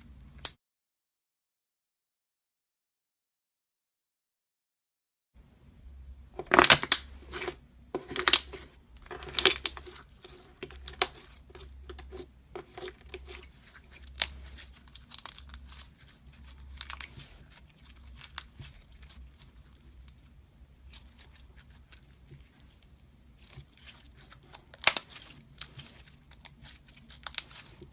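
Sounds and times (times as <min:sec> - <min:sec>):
slime crackling and popping: 0:06.4 - 0:22.8, 0:23.4 - 0:27.9.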